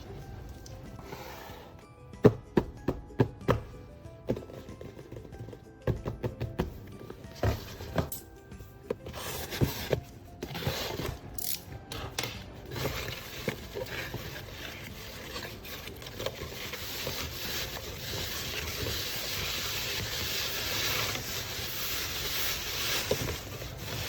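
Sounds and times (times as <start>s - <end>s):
paper rustling: 12.6s - 24.0s.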